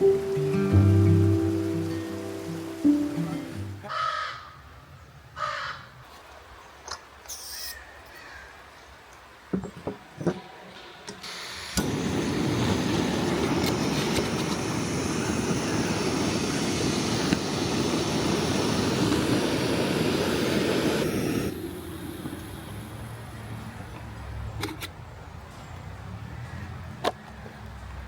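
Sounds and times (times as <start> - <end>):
steady rushing noise: 11.6 - 24.4.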